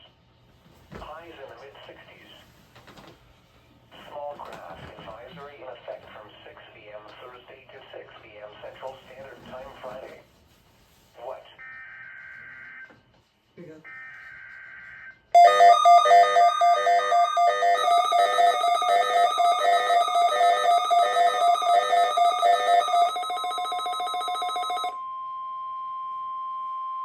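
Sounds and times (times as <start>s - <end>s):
steady single-pitch alarm tone: 14.0s - 27.0s
pulsing electronic alert tones: 15.4s - 23.2s.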